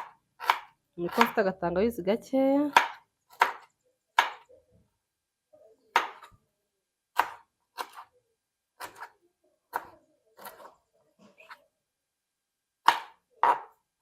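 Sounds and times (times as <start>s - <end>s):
knife chopping on cutting board: 0.0s - 1.4s, 2.7s - 4.4s, 5.9s - 6.3s, 7.2s - 8.1s, 8.8s - 10.8s, 12.8s - 13.8s.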